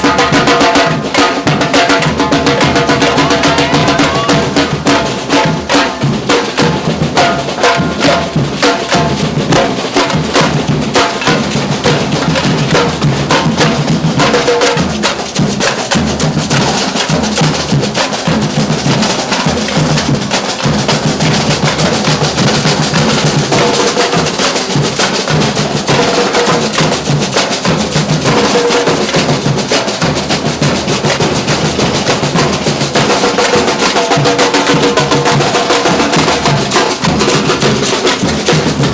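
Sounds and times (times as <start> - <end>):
drum band playing: 0.0 - 38.9.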